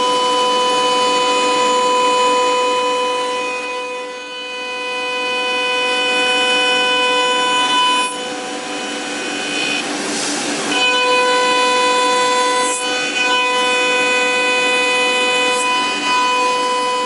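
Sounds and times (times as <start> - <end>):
milling machine spindle whine: 0.0 - 17.0.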